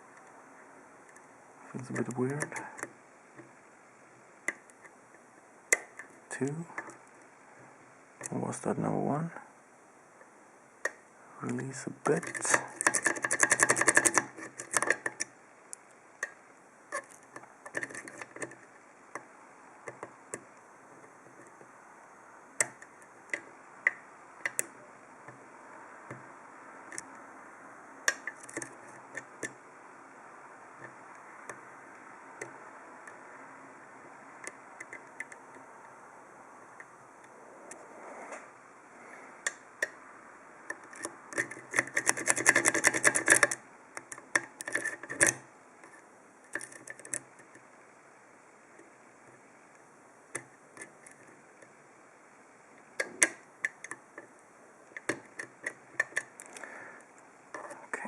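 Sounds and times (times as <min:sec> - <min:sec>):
lock pick clicking on pins: 0:12.2 - 0:19.2, 0:40.7 - 0:47.6, 0:53.0 - 0:54.0, 0:55.0 - 0:56.7.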